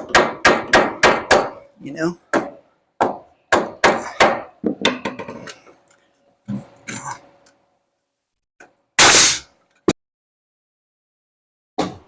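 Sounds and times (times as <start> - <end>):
hammer striking nails into wood: 0.0 - 1.6, 2.4 - 4.5.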